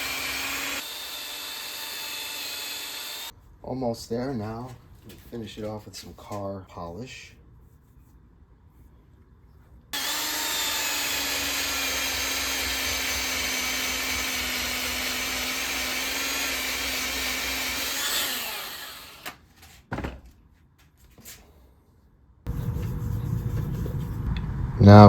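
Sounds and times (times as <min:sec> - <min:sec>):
electric polisher whining: 0:00.0 - 0:03.3, 0:10.0 - 0:19.2.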